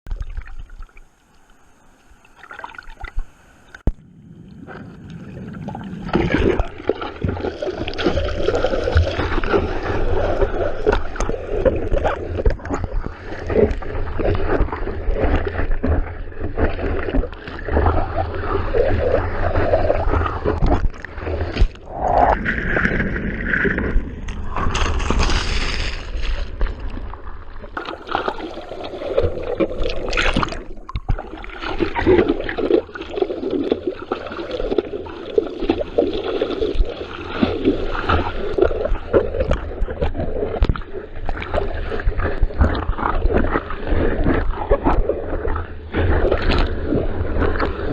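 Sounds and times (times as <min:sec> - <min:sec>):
water sloshing and gurgling: 0:00.1 - 0:47.9
water splashing: 0:00.1 - 0:47.9
surf rumbling: 0:03.5 - 0:32.5.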